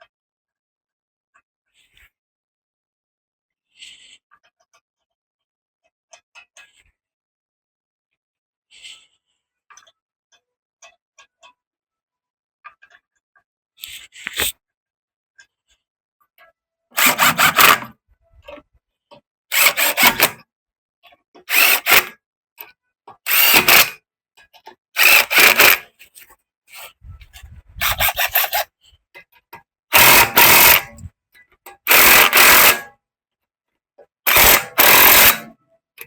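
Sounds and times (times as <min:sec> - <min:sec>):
ratchet wrench clicking: 0:17.0 - 0:17.9, 0:19.6 - 0:20.4, 0:21.5 - 0:22.1, 0:23.3 - 0:24.0, 0:25.0 - 0:25.8, 0:30.0 - 0:31.1, 0:31.9 - 0:32.9, 0:34.3 - 0:35.5.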